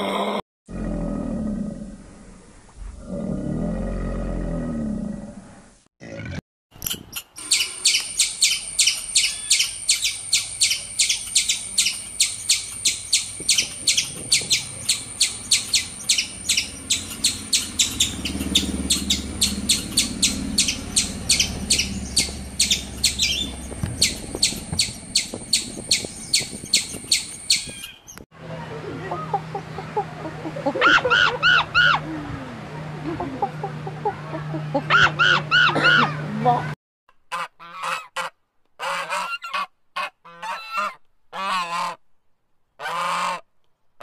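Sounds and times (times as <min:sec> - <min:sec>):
low grunting animal call: 0:00.0 - 0:06.4
squirrel alarm chirps: 0:07.4 - 0:28.0.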